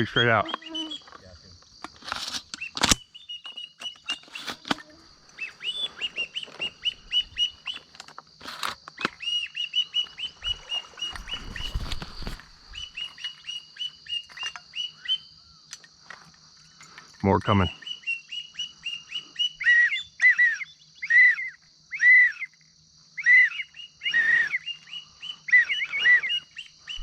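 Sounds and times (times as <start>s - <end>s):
ducks whistling: 0.0s - 1.3s, 2.3s - 8.0s, 9.0s - 15.6s, 17.6s - 22.6s, 23.2s - 27.0s
insects trilling: 0.0s - 27.0s
sharp click: 1.8s - 4.9s.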